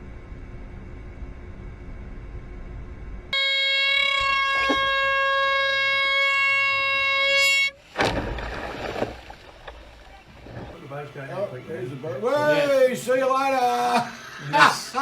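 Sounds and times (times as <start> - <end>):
air horn blast: 3.3 - 7.8.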